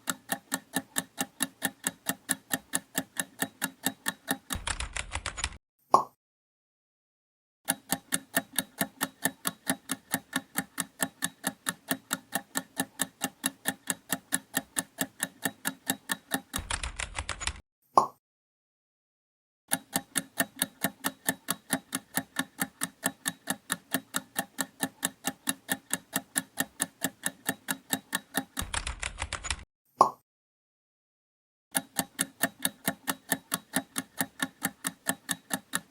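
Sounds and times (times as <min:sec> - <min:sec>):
countdown timer ticking: 0:19.7 - 0:28.7.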